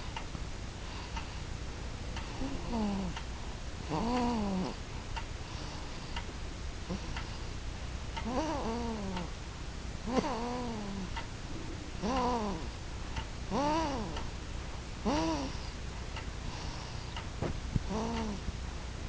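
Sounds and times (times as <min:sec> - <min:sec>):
baby snoring: 0:02.4 - 0:03.2, 0:03.9 - 0:04.8, 0:08.2 - 0:09.2, 0:10.1 - 0:11.1, 0:12.0 - 0:12.7, 0:13.5 - 0:14.2, 0:15.0 - 0:15.6, 0:17.9 - 0:18.4.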